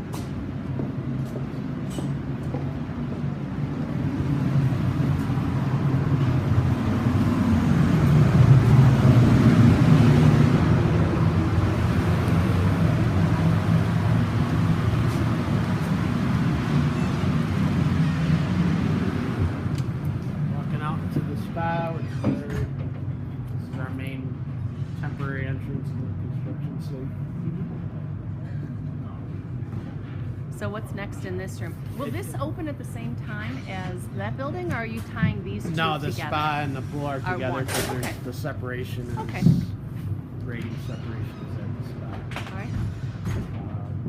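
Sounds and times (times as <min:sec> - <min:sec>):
engine humming: 0:00.0 - 0:22.0.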